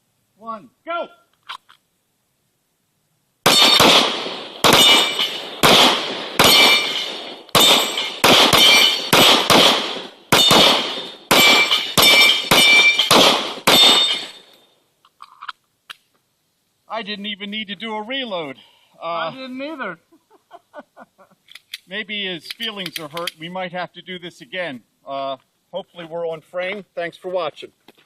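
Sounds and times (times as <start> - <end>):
rapid pistol fire: 3.4 - 14.3
steel targets clanging: 3.5 - 3.9, 4.6 - 5.6, 6.4 - 9.4, 10.3 - 14.6.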